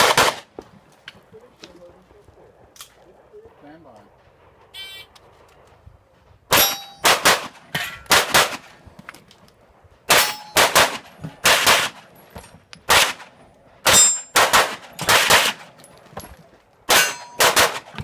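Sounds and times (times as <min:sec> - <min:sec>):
steel targets clanging: 0:06.5 - 0:08.3, 0:10.1 - 0:12.6, 0:13.8 - 0:17.9
handgun firing rapidly: 0:06.5 - 0:08.6, 0:10.1 - 0:12.0, 0:13.9 - 0:15.6, 0:16.9 - 0:18.0.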